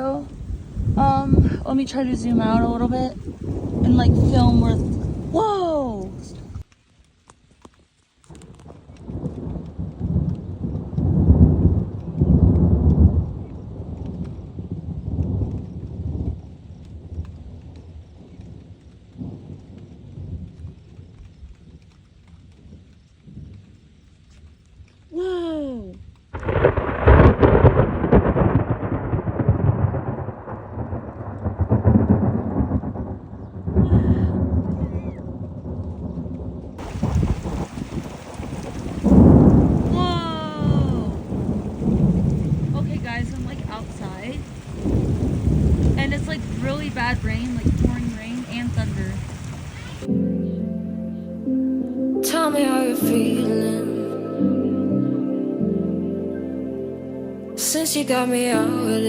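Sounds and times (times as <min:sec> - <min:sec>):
rolling thunder: 0:00.0 - 0:06.7, 0:08.6 - 0:24.0, 0:26.3 - 0:50.2
rain pattering: 0:00.0 - 0:50.2, 0:57.6 - 0:59.0.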